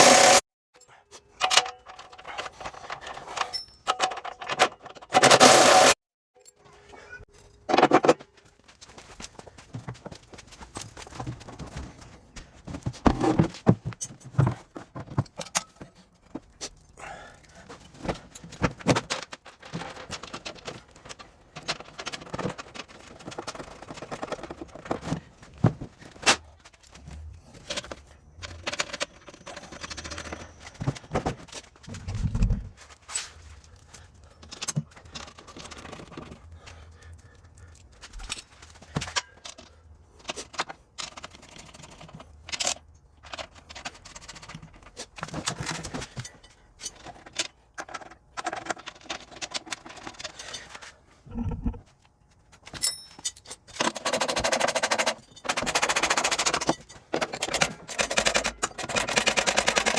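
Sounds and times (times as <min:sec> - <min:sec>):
metal tools clinking: 0:00.0 - 0:07.7, 0:52.7 - 0:59.9.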